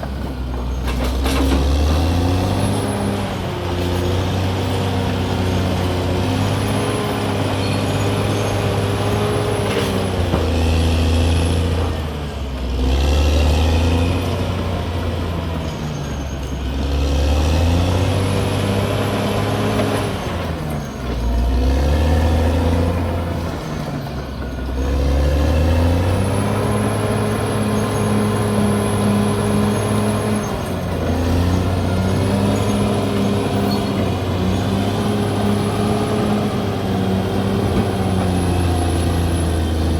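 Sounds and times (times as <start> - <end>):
bulldozer diesel engine under load: 0.0 - 39.9.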